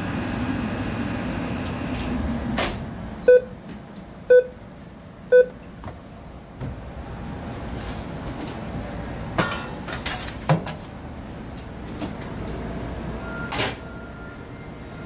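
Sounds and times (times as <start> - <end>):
short electronic beeps: 3.2 - 3.6, 4.3 - 4.6, 5.3 - 5.6.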